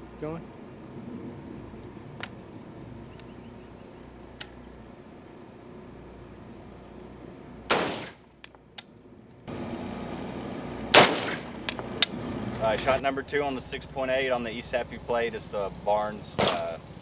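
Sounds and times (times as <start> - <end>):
rifle shots: 7.7 - 8.2, 10.9 - 11.9.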